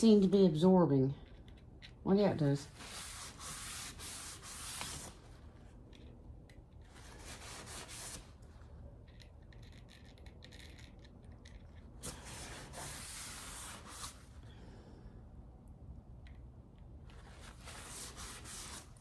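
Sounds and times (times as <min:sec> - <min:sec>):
sandpaper scratching on wood: 0:02.8 - 0:05.1, 0:17.6 - 0:18.9.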